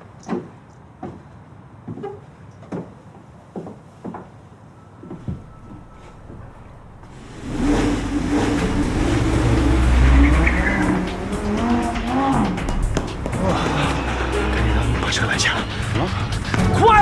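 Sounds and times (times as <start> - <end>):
race car engine revving: 5.5 - 17.0.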